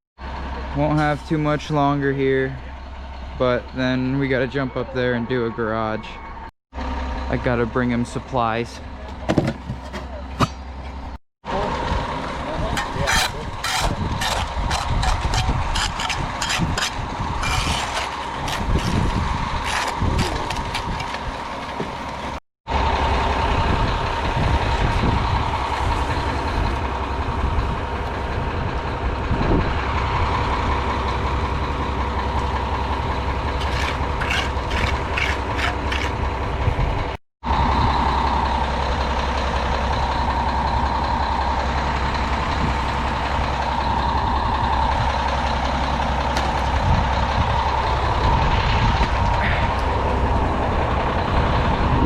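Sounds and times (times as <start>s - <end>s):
truck engine running: 0.2s - 52.0s.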